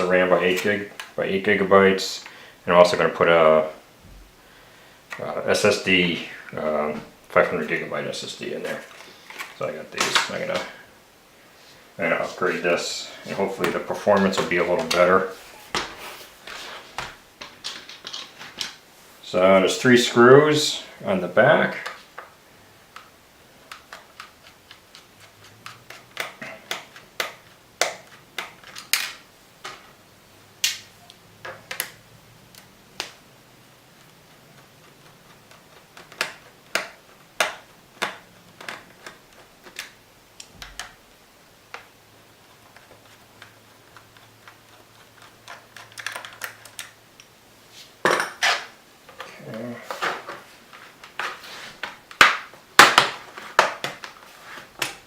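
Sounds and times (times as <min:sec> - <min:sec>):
screwdriver clicking on screws: 0:42.8 - 0:47.3.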